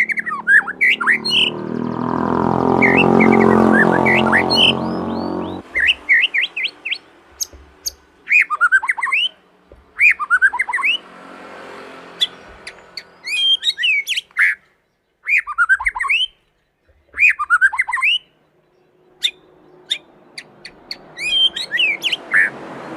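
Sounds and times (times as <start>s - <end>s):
bird singing whistled notes: 0.0s - 2.2s, 12.2s - 22.5s.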